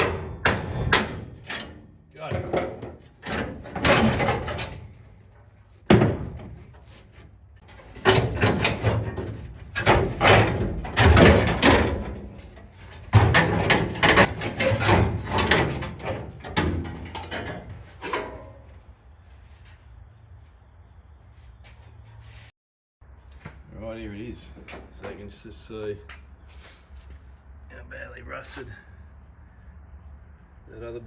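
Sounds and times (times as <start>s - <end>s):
metal parts clattering: 0.0s - 5.3s, 7.6s - 18.6s.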